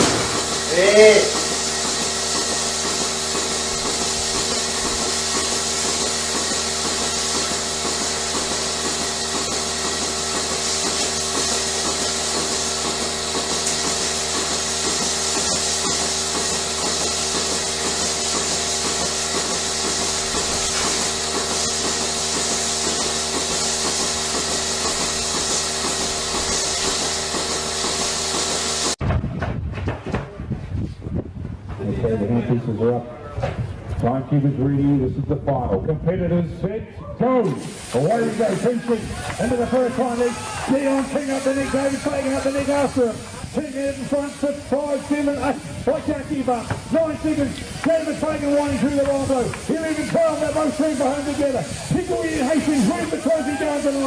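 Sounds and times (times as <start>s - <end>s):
machine hiss: 0.0s - 29.0s, 37.5s - 54.0s
machine humming and pulsing: 0.0s - 29.0s.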